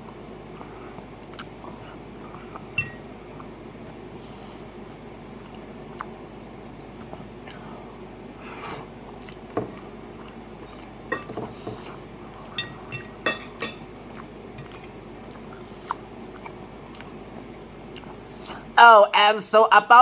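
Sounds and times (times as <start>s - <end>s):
quiet eating sounds: 0.0s - 3.6s, 5.4s - 17.2s, 17.8s - 18.7s
utensil clinking against a dish: 2.8s - 3.1s, 11.1s - 13.9s, 14.6s - 15.0s.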